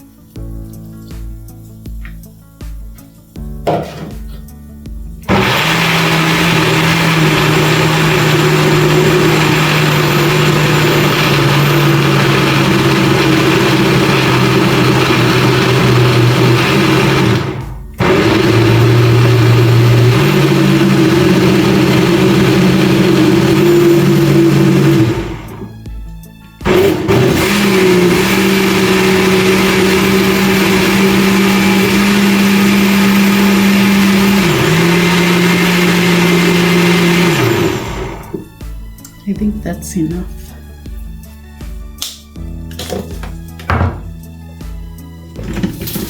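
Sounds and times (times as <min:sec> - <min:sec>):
electric blender running: 0:05.3 - 0:25.8, 0:26.6 - 0:38.6, 0:45.4 - 0:46.0.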